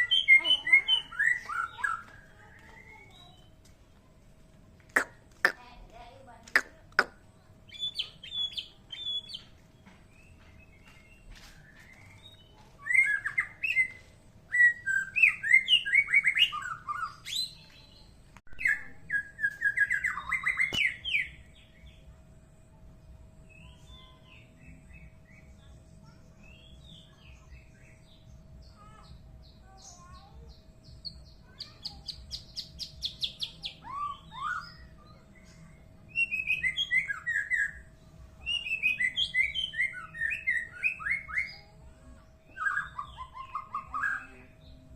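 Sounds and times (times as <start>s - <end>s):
bird singing chirps and whistles: 0.0s - 3.5s, 7.7s - 9.5s, 10.1s - 21.8s, 31.0s - 35.0s, 36.1s - 37.8s, 38.4s - 41.8s, 42.5s - 44.7s
faint steady hum: 0.0s - 44.9s.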